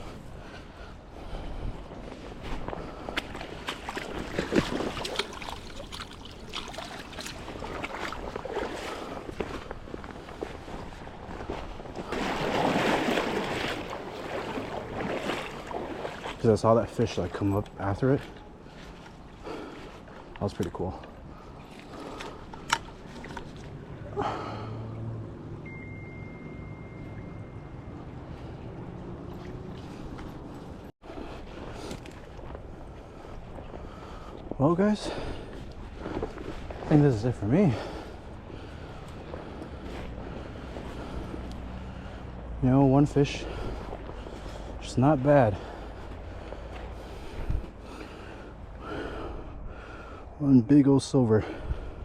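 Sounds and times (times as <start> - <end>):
creek water splashing: 0.0 - 50.3
short splashes and knocks: 2.6 - 23.9, 28.4 - 30.7.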